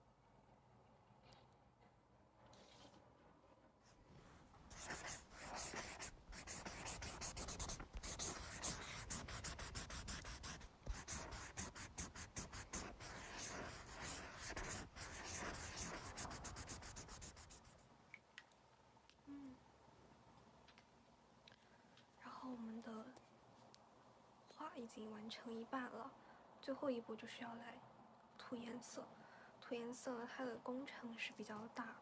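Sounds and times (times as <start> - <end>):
pen scratching on paper: 4.7 - 17.8.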